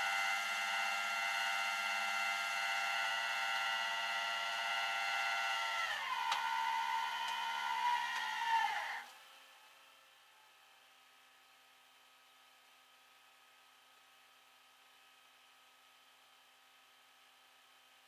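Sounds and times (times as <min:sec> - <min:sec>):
hydraulic pump whine: 0:00.0 - 0:09.2.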